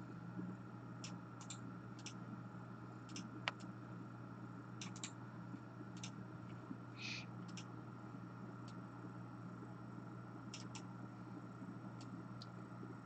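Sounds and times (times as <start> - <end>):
steady low hum: 0.0 - 13.0
mouse and keyboard clicks: 4.8 - 5.2, 10.5 - 10.9.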